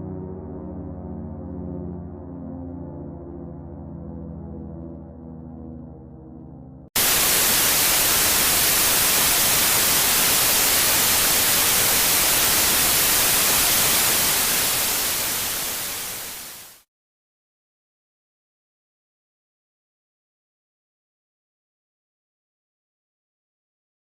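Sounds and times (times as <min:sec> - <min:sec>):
low droning music: 0:00.0 - 0:06.9
static hiss: 0:07.0 - 0:16.8.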